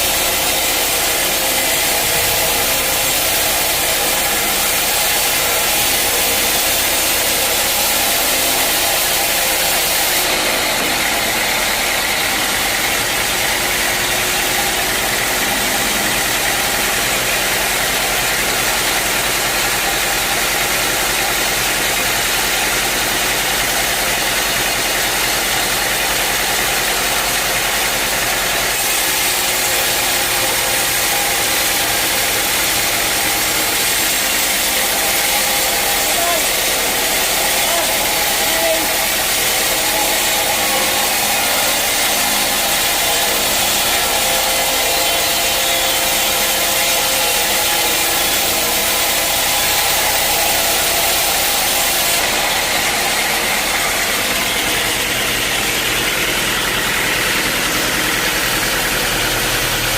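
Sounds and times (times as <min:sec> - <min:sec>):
sawmill machinery running: 0:00.0 - 0:59.9.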